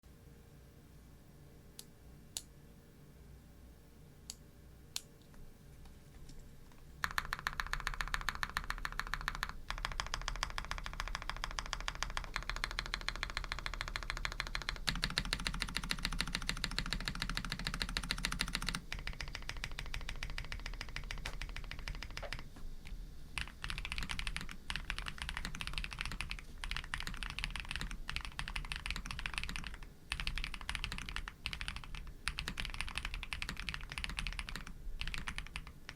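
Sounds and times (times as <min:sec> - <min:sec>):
mechanical keyboard typing: 0:07.0 - 0:22.5, 0:23.4 - 0:35.9.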